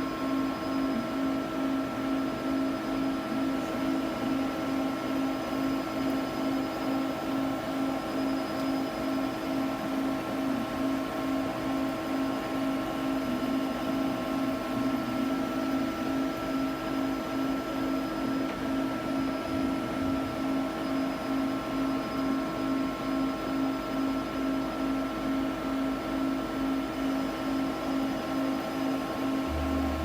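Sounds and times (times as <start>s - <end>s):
lathe machine hum pulsing: 27.6s - 30.0s.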